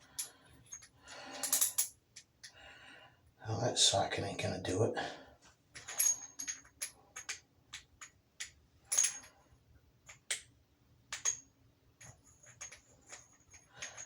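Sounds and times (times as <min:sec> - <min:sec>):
metal sockets clinking: 0:05.8 - 0:09.4, 0:11.1 - 0:14.0.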